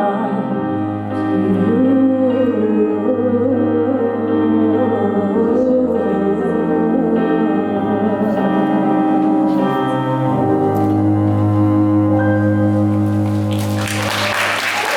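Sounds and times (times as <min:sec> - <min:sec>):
woman singing with vibrato: 0:00.0 - 0:10.8
sustained backing chords: 0:00.0 - 0:14.9.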